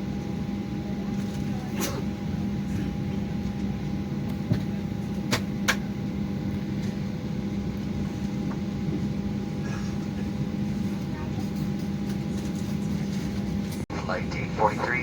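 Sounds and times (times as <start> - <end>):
cabin air-conditioning hum: 0.0 - 15.0.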